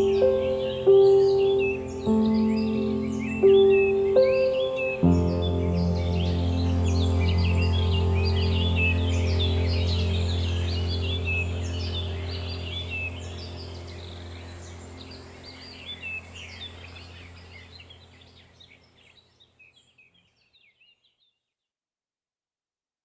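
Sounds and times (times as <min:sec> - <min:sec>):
low steady hum: 0:00.0 - 0:19.0
songbirds chirping: 0:00.0 - 0:21.4.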